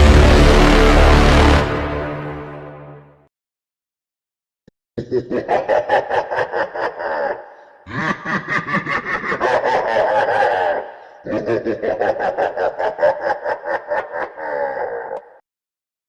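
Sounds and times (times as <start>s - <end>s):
person laughing: 5.0s - 15.4s.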